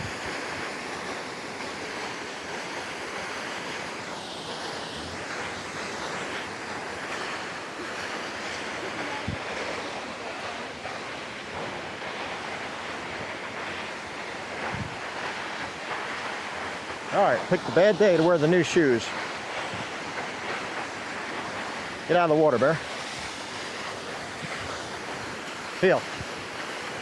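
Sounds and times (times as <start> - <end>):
waterfall roaring: 0.0 - 27.0
wind buffeting the microphone: 8.9 - 10.0, 13.7 - 15.7, 22.7 - 27.0.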